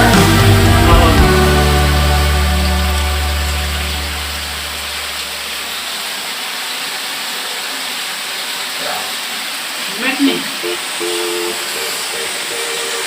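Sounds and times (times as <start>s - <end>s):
music track: 0.0s - 5.3s, 10.6s - 13.0s
waterfall rushing: 0.0s - 13.0s.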